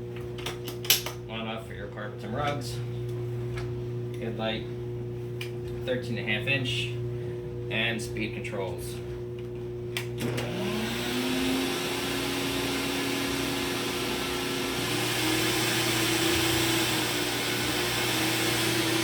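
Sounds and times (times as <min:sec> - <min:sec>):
vacuum cleaner motor whine: 0:10.0 - 0:19.0.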